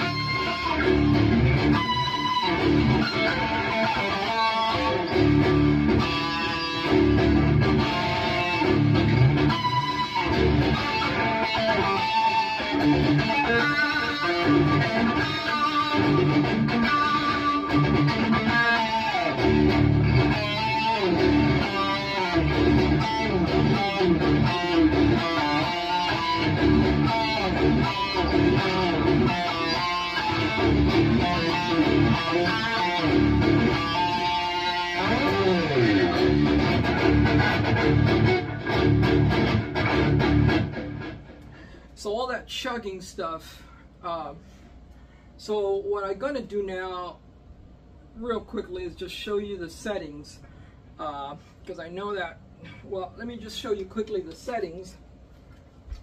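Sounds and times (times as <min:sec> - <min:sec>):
distorted electric guitar metal riffs: 0:00.0 - 0:41.8.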